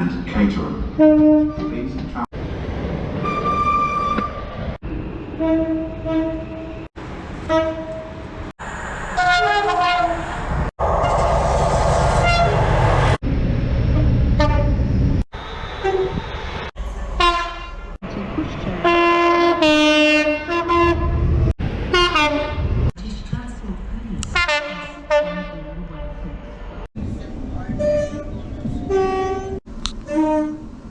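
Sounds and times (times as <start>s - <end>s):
moving train rumble: 0.0s - 30.9s
train horn blasts: 5.4s - 6.8s, 7.4s - 8.2s, 9.2s - 10.2s, 28.9s - 30.7s.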